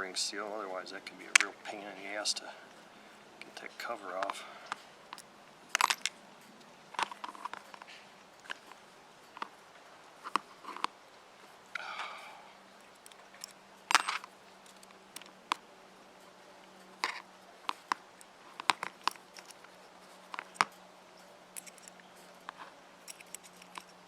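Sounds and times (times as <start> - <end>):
faint steady low hum: 0.0 - 24.0
tools tapping small metal parts: 5.1 - 6.1, 12.8 - 15.4, 17.0 - 19.7, 20.4 - 20.8, 21.6 - 24.0.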